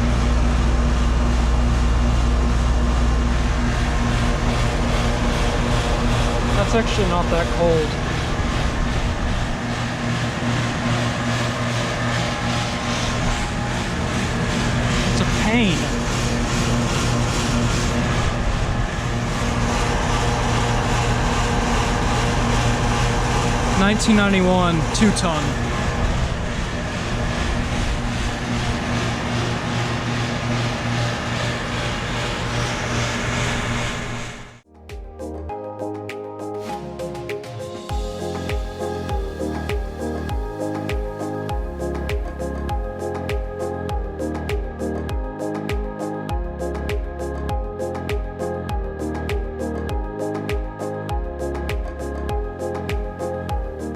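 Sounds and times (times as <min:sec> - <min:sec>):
air conditioner compressor hum: 0:00.0 - 0:34.6
condenser fans rushing: 0:00.0 - 0:34.6, 0:37.4 - 0:45.9.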